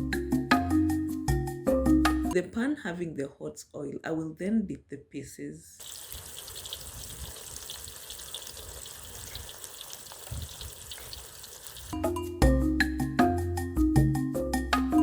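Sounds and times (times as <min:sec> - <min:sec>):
marimba-like background music: 0:00.0 - 0:02.4, 0:12.0 - 0:15.0
slices sizzling in hot oil: 0:05.8 - 0:12.0.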